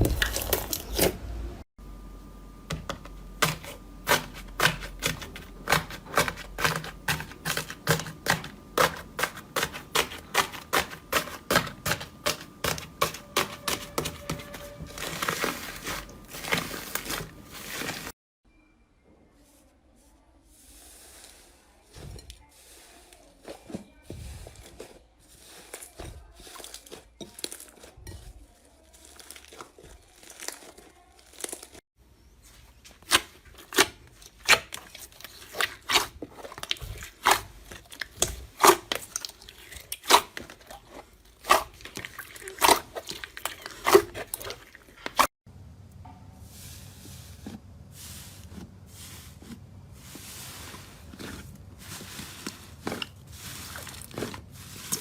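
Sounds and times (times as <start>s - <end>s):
slime crinkling: 3.7s - 18.2s, 22.6s - 31.8s, 48.2s - 55.0s.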